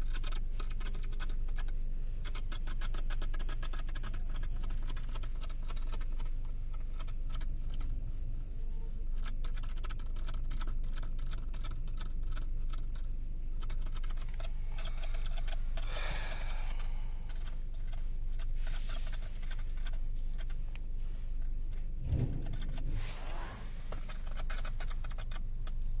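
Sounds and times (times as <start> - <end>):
low hum: 14.1 - 26.0.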